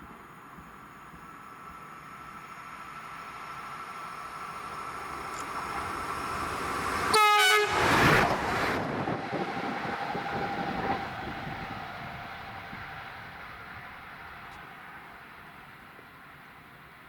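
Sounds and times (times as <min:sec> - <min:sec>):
train passing with whine: 0:00.0 - 0:17.0
train horn blast: 0:07.1 - 0:08.1.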